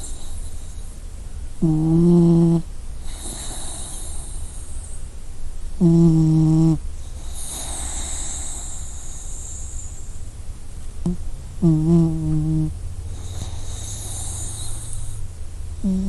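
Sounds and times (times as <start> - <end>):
puppy snoring: 0.0 - 0.9, 1.6 - 5.0, 5.8 - 10.2, 11.0 - 15.2, 15.8 - 16.0
breathy hiss of breath: 0.0 - 1.2, 2.9 - 5.2, 6.9 - 10.4, 13.0 - 15.4.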